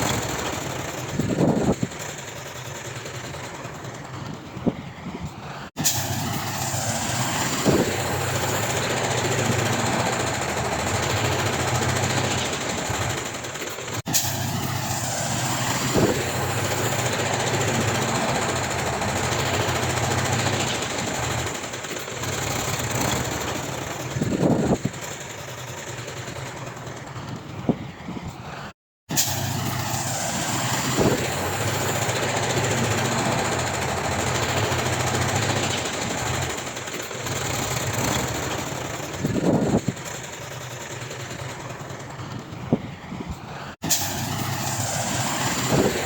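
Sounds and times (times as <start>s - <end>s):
diesel machinery running: 0.0s - 46.0s.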